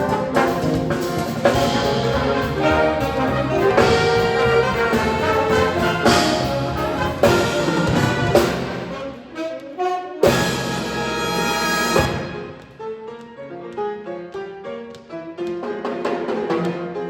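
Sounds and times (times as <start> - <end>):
orchestral brass music: 0.0 - 13.0.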